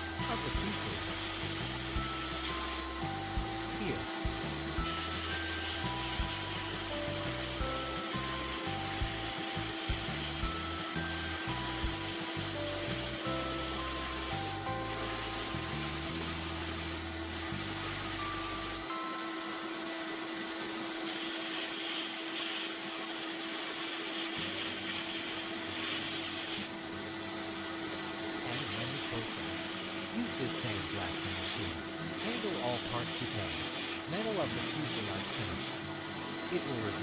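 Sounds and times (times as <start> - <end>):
abrasive rasping on metal: 0.0 - 3.1, 4.8 - 18.9
soft background music: 0.0 - 37.0.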